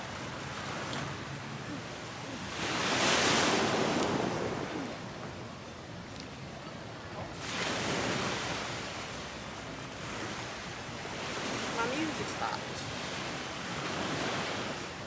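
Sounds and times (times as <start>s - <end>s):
steady sea noise: 0.0s - 15.0s
ocean waves breaking: 9.9s - 15.0s.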